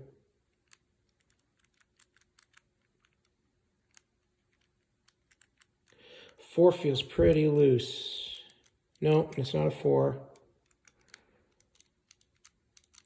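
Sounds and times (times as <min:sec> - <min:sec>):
padlock wheel clicking: 0:00.5 - 0:06.0, 0:08.4 - 0:09.8, 0:10.4 - 0:13.0.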